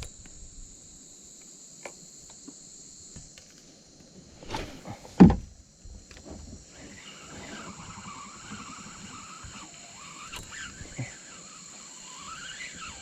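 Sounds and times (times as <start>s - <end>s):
faint wavering hum: 0.0s - 13.0s
insects droning: 0.0s - 13.0s.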